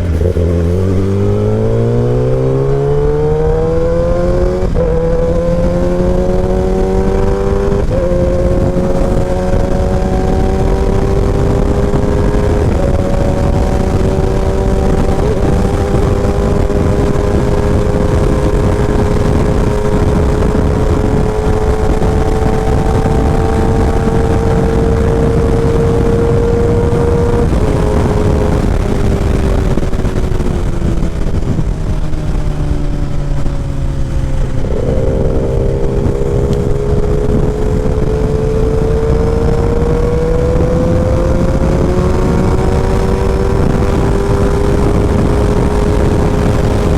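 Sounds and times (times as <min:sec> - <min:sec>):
heavy wind: 0:00.0 - 0:46.9
motorcycle engine revving: 0:00.0 - 0:46.9
road rumble: 0:00.0 - 0:46.9.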